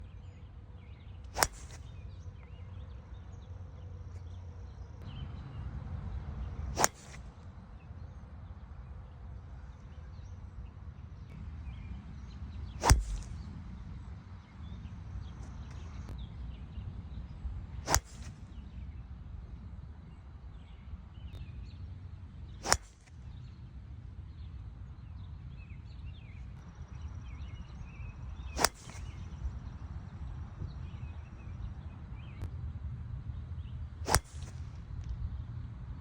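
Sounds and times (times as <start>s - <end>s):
golf club striking ball: 1.4s - 1.9s, 6.8s - 7.2s, 12.8s - 13.4s, 17.9s - 18.3s, 28.6s - 29.2s, 34.1s - 34.5s.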